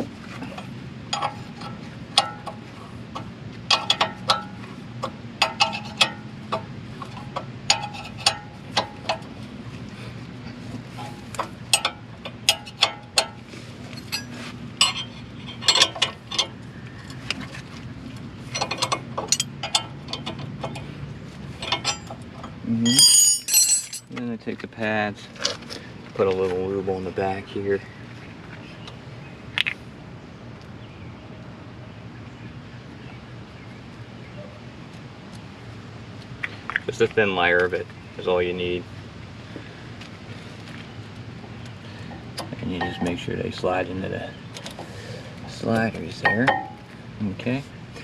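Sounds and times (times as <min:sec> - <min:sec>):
wrenches clinking on metal bolts: 0:03.7 - 0:04.6, 0:05.4 - 0:09.3, 0:11.0 - 0:13.4, 0:14.0 - 0:16.6, 0:18.5 - 0:20.9, 0:21.6 - 0:24.2.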